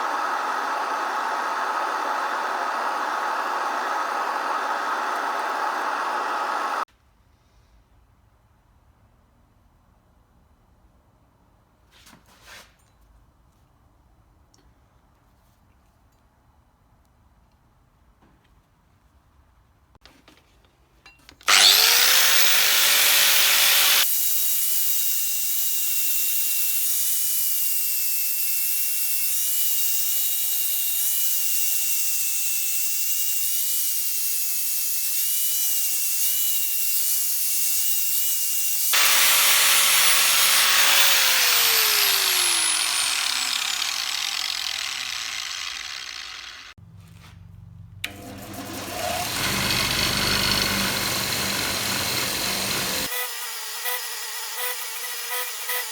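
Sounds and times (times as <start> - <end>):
electric grinder whining: 0.0 - 6.8, 21.5 - 27.2, 29.2 - 46.8, 48.1 - 55.9.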